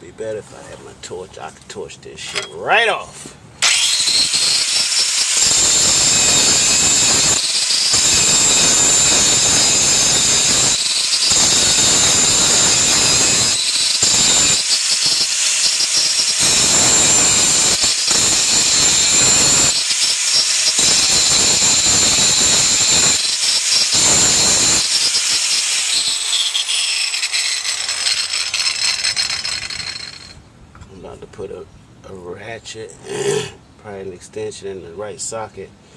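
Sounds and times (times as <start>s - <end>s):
grinder grinding on steel: 3.6s - 30.4s.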